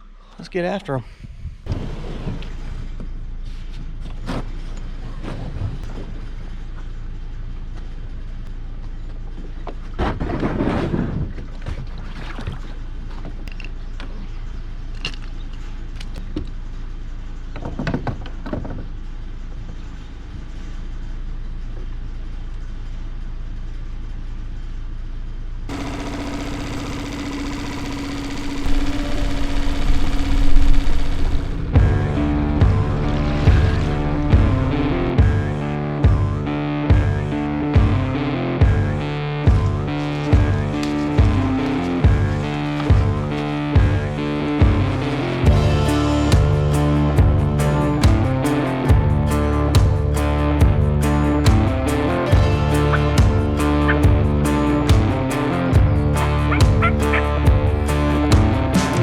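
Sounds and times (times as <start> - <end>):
engine idling: 25.7 - 59.0
music: 31.7 - 59.0.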